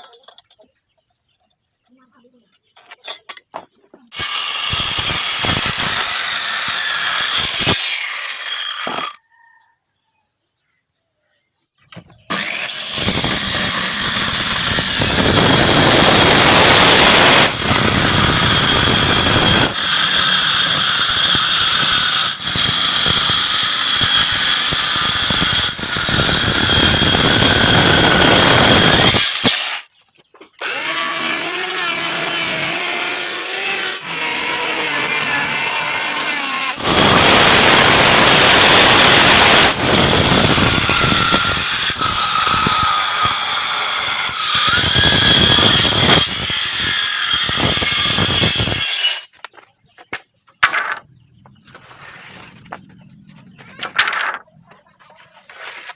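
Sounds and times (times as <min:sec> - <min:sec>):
power tools running on wood: 0:04.1 - 0:09.2, 0:12.3 - 0:29.9, 0:30.6 - 0:49.3.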